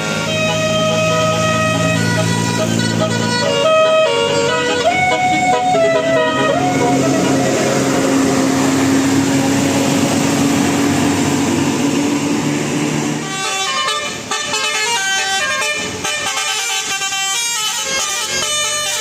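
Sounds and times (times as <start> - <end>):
musical horn playing tune: 0.0 - 9.2, 13.2 - 19.0
vehicle noise low drone: 0.0 - 16.1.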